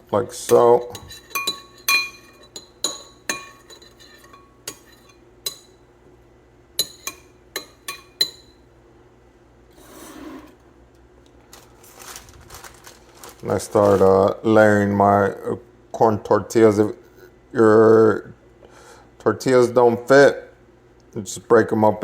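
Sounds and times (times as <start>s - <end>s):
spoon clinking against bowl: 0.9s - 5.8s, 6.8s - 8.6s
soft rustle: 11.5s - 14.2s.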